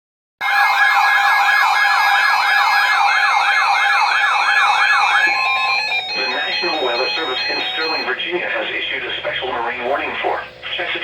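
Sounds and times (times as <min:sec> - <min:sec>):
two-tone sweeping siren alert: 0:00.4 - 0:08.2.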